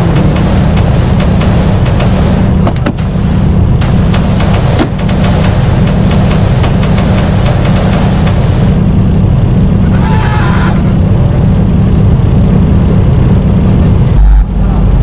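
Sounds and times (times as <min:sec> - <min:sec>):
loud distorted bass-heavy music: 0:00.0 - 0:02.5.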